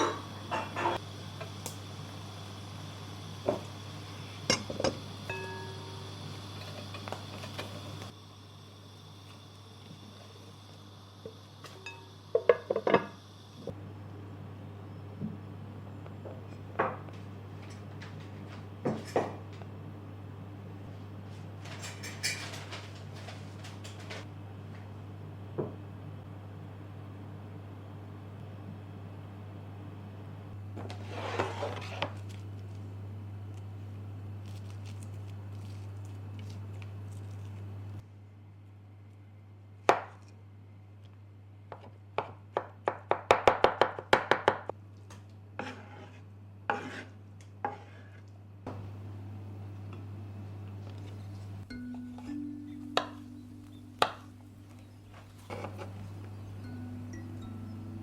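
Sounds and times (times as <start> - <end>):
steady low hum: 0.0 - 22.0, 44.7 - 58.0
low hum: 48.7 - 58.0.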